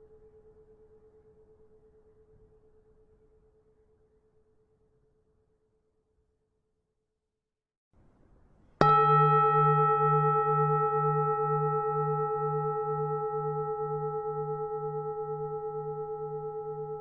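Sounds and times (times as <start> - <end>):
temple bell ringing: 8.8 - 17.0.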